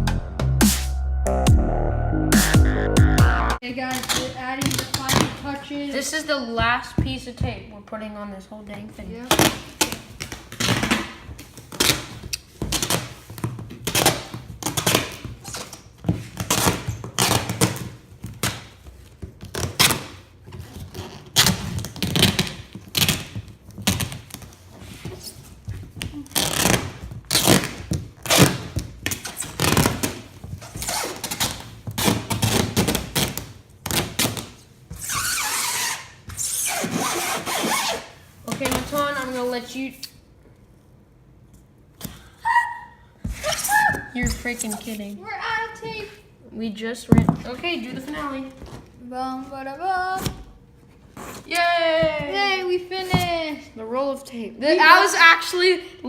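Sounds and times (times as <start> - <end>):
duct tape ripping: 26.3 - 38.0.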